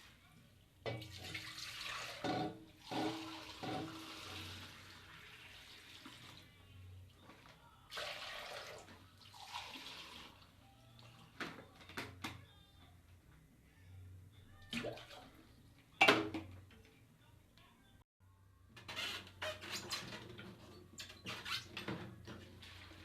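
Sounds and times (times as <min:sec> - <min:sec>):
water running: 0:00.9 - 0:06.6, 0:07.9 - 0:11.6.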